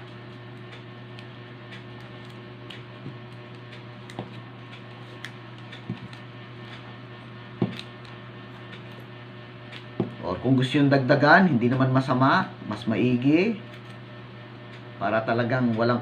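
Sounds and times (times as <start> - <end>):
tape crackles and clicks: 0.0 - 10.2, 13.6 - 14.0
low electrical hum: 0.0 - 16.0.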